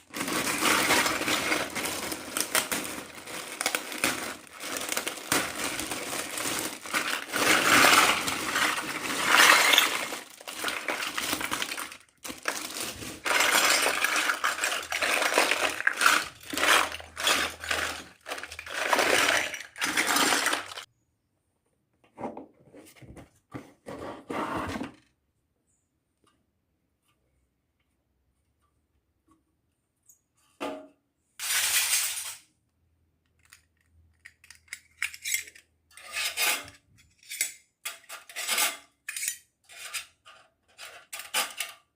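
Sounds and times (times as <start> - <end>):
plastic toys clattering: 0.0 - 20.9, 31.4 - 32.6, 33.3 - 41.9.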